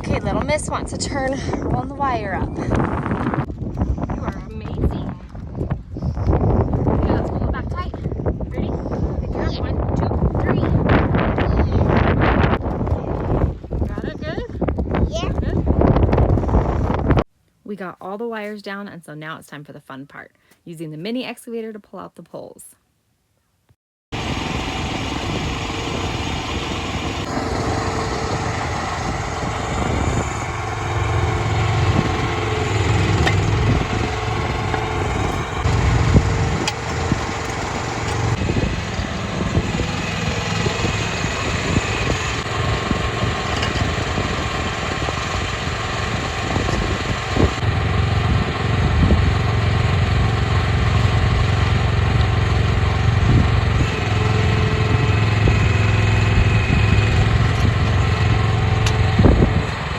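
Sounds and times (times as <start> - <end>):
excavator engine running: 24.2 - 59.9.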